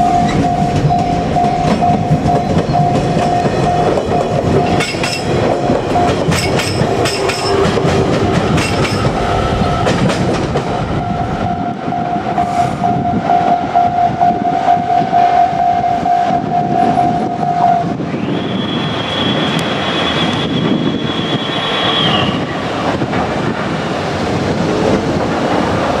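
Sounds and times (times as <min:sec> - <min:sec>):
train wheels clacking over rail joints: 0:00.0 - 0:10.8
steady tone: 0:00.0 - 0:17.9
electric train passing: 0:00.0 - 0:26.0.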